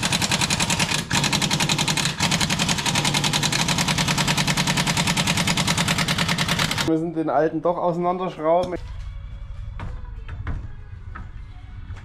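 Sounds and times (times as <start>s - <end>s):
impact wrench rattling: 0.0s - 6.9s.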